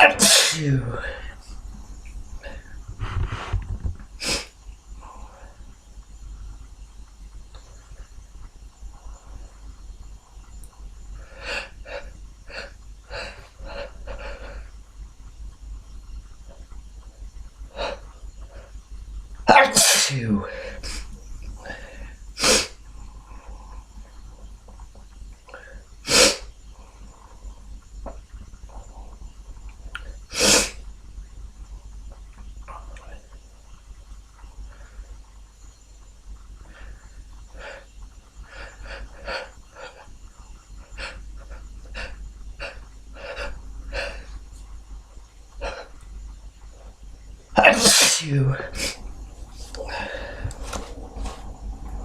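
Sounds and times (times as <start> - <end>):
man sneezing: 0.0 - 1.0, 19.5 - 21.0, 47.6 - 49.0
person sniffing breaths: 4.2 - 4.5, 20.5 - 22.8, 25.6 - 26.5, 30.3 - 30.8, 47.8 - 51.5
breathing and sniffling: 40.8 - 44.4, 49.6 - 51.4.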